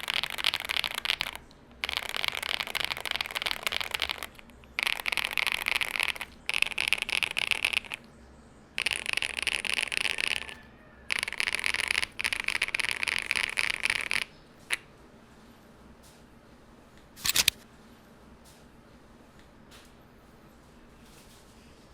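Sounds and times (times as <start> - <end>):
typing on mechanical keyboard: 0.0 - 8.0, 8.8 - 14.3.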